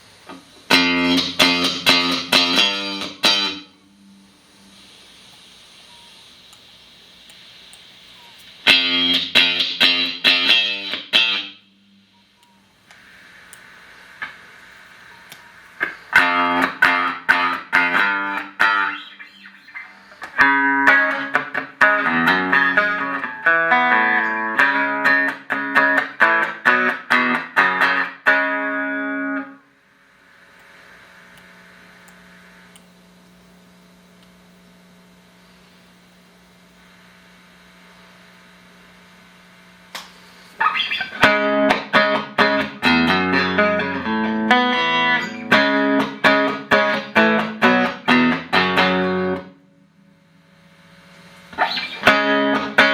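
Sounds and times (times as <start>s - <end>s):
amplifier hum and hiss: 0.0s - 52.9s
electric guitar picked notes: 0.6s - 4.9s, 8.6s - 11.8s, 15.2s - 29.7s, 40.6s - 52.9s.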